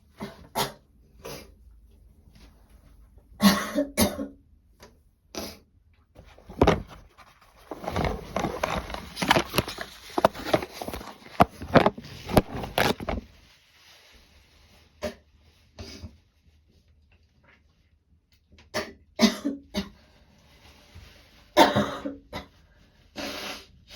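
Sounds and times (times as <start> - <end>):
woman coughing: 3.4 - 4.4, 18.8 - 19.9, 21.6 - 22.5.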